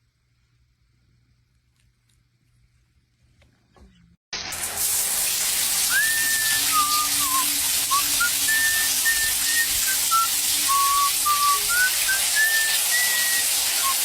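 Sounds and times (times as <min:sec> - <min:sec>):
whistled tune: 0:05.9 - 0:14.0.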